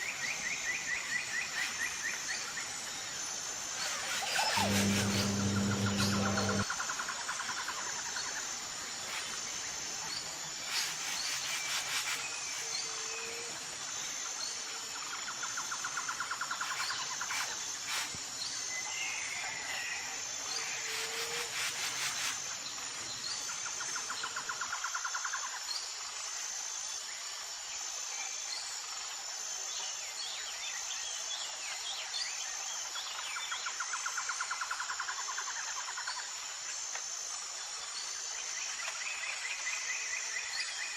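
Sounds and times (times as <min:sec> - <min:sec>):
high insect whine: 0:00.0 - 0:31.2
fast pulsing insect calls: 0:00.4 - 0:26.3.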